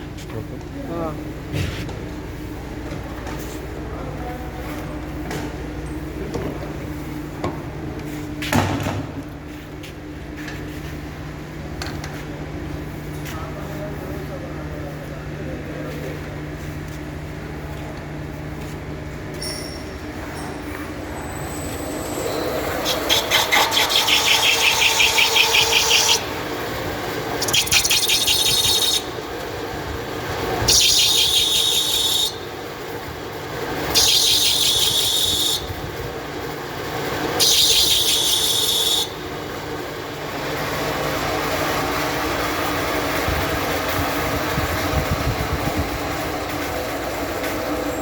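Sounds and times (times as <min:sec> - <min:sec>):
pipe threading machine running: 0:20.6 - 0:48.0
high-pitched squealing rasp: 0:21.3 - 0:26.3, 0:27.4 - 0:29.2, 0:30.6 - 0:32.5, 0:33.9 - 0:35.8, 0:37.4 - 0:39.2.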